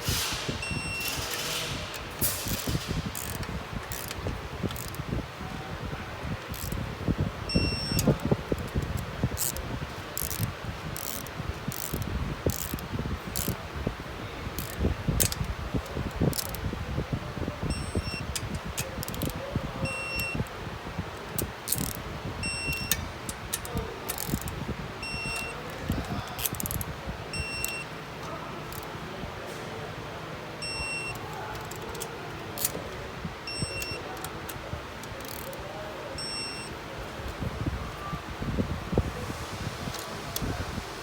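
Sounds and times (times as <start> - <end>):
short electronic beeps: 0.6 - 1.2, 7.5 - 8.1, 36.2 - 36.7.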